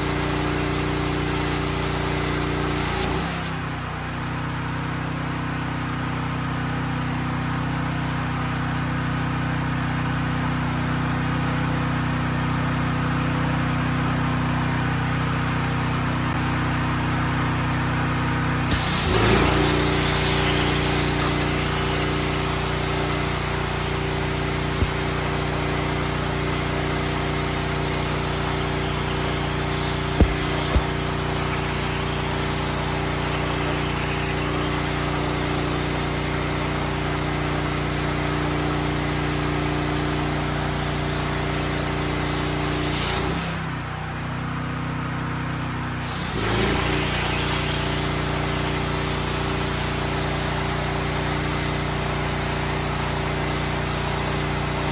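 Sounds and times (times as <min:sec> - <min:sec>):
plasma cutter hissing: 0:00.0 - 0:05.0, 0:14.6 - 0:16.4, 0:18.6 - 0:54.9.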